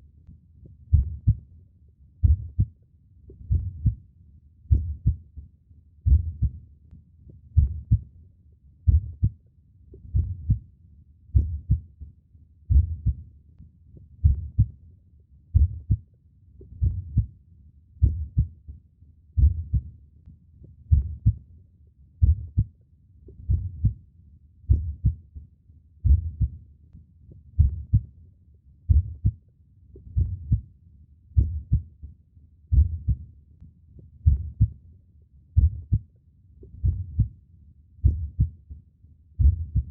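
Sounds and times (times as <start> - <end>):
heartbeat double thump: 15.6 - 16.0, 22.2 - 22.7, 34.2 - 34.7, 39.4 - 39.9.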